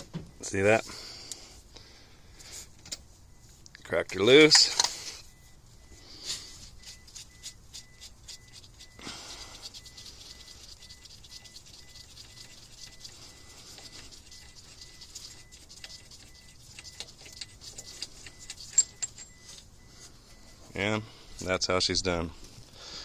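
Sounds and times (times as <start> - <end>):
dull thump: 0.0 - 0.4.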